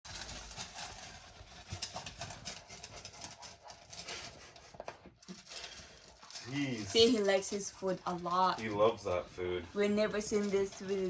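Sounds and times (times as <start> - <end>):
dog crunching food from a bowl: 0.1 - 11.0.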